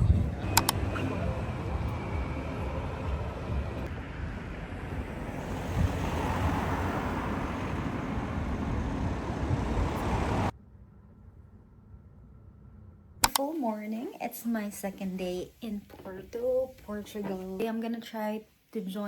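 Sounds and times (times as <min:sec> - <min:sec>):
wind buffeting microphone: 0:00.0 - 0:10.5
city ambience: 0:00.0 - 0:19.0.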